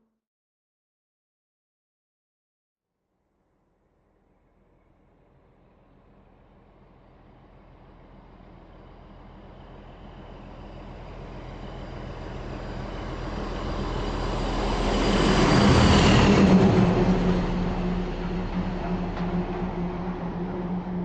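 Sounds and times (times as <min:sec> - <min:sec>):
large truck passing: 0:05.7 - 0:21.0.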